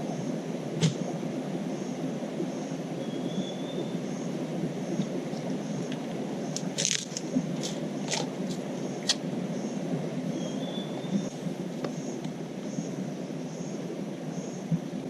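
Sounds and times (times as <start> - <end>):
insects chirping: 0.0 - 15.0
campfire crackling: 5.0 - 9.4.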